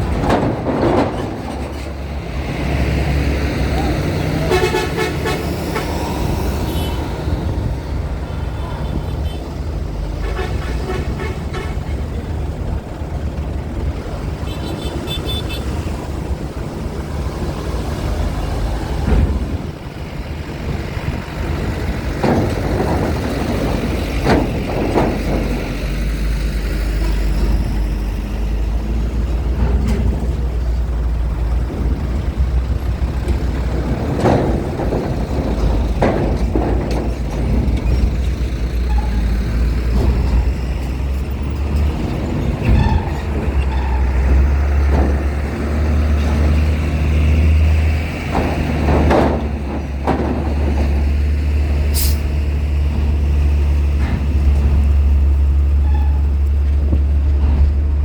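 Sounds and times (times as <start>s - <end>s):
heavy vehicle engine rumble: 0.0s - 58.0s
loud thumps: 41.9s - 55.6s.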